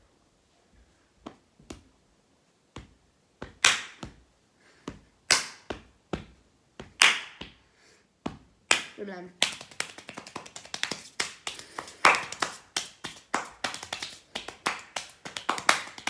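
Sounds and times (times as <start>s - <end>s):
body percussion pops: 2.7s - 4.3s, 4.9s - 7.6s, 8.2s - 16.0s.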